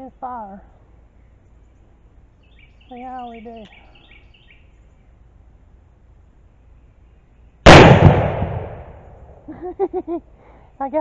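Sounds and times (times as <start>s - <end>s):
pistol shot: 7.7s - 9.2s.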